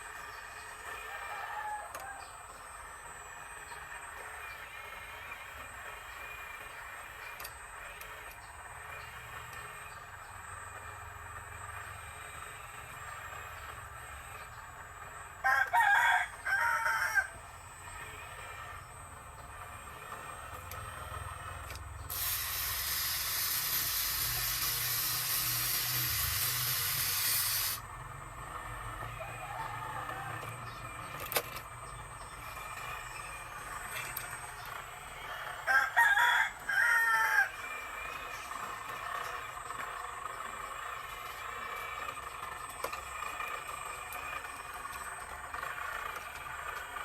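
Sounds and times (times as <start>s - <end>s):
rooster crowing: 1.0s - 2.4s, 15.4s - 17.4s, 29.0s - 30.8s, 35.2s - 37.8s
steady hiss: 22.1s - 28.1s.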